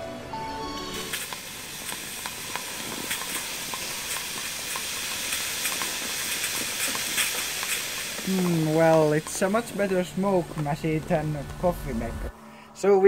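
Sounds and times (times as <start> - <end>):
coffee maker hissing steam: 0.6 - 12.3
sharp spitting pops: 1.1 - 11.5.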